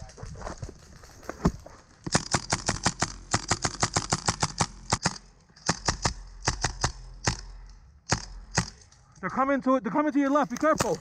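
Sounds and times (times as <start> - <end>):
airsoft guns firing rapid shots: 2.1 - 8.8.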